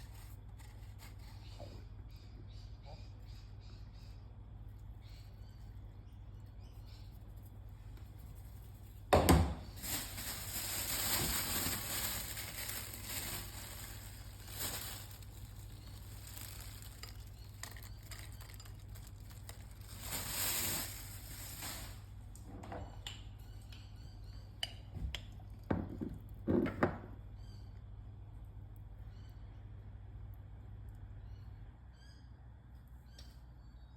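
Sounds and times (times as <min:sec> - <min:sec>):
low steady hum: 0:00.0 - 0:33.9
scraping and rustling: 0:09.7 - 0:22.1.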